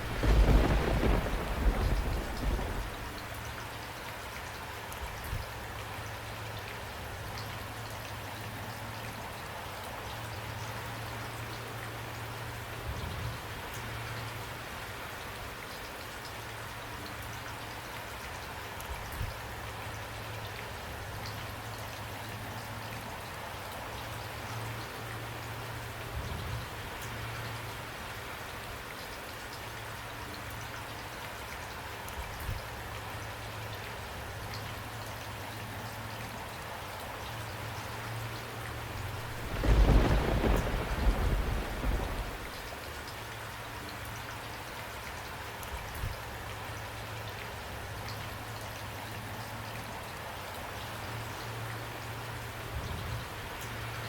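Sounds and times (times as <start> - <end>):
low rumble of thunder: 0.0 - 3.8, 38.6 - 43.1
steady rain falling: 0.0 - 54.0.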